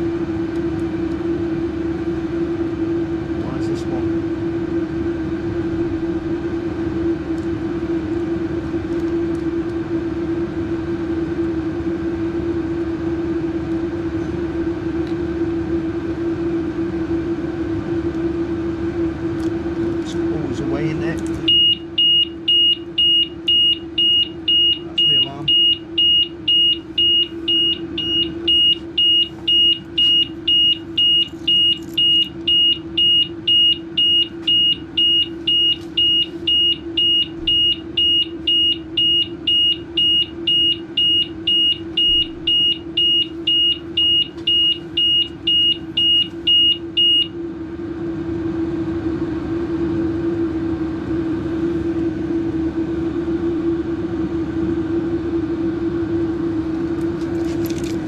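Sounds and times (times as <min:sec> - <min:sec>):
steady low hum: 0:00.0 - 0:58.0
alarm beeping: 0:21.4 - 0:47.4.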